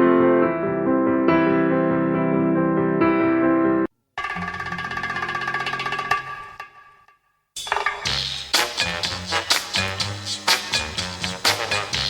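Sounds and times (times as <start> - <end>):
swing or funk music with steady beat: 8.1 - 12.0.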